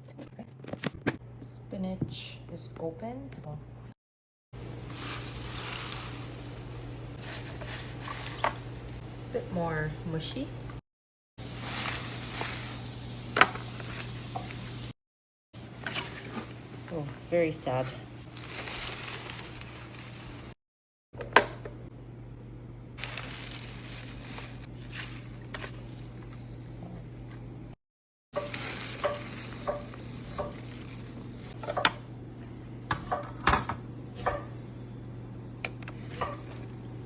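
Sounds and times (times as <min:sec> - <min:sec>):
plastic containers rustling: 0:04.9 - 0:09.0, 0:15.7 - 0:17.1, 0:17.7 - 0:20.6, 0:23.0 - 0:26.3.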